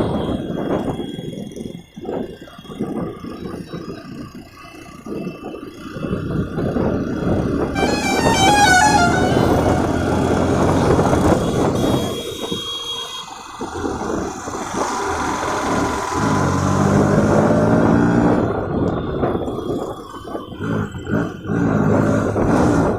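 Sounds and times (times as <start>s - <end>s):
street traffic: 0.0s - 22.9s
vehicle horn: 7.8s - 13.2s.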